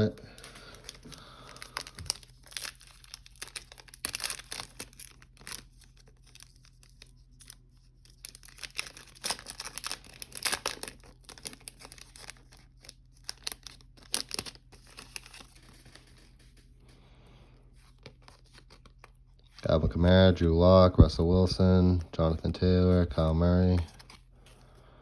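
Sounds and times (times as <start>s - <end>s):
plastic wrapping tearing and crinkling: 0.0s - 16.5s.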